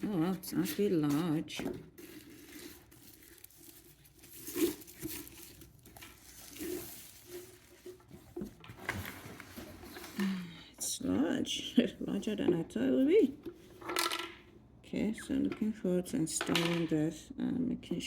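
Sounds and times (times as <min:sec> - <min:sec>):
cardboard and packaging rustling: 0:00.0 - 0:10.4.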